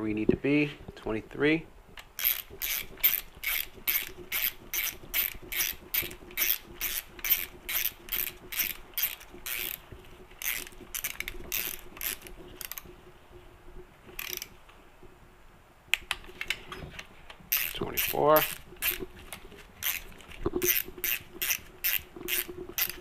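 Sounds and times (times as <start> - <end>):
ratchet wrench clicking: 2.1 - 9.8, 10.4 - 12.9, 14.2 - 14.5, 17.5 - 19.1, 19.8 - 23.0.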